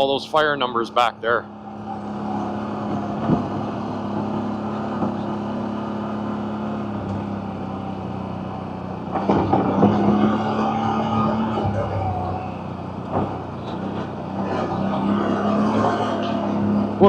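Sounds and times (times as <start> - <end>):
atv engine running: 0.0 - 17.0
knocks and rattles: 12.9 - 14.3.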